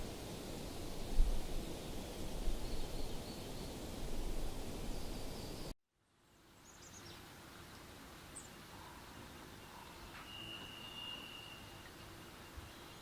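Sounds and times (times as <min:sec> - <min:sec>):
quiet outdoor ambience: 0:00.0 - 0:13.0
steady outdoor noise: 0:00.0 - 0:13.0
faint high bird chirps: 0:08.4 - 0:13.0.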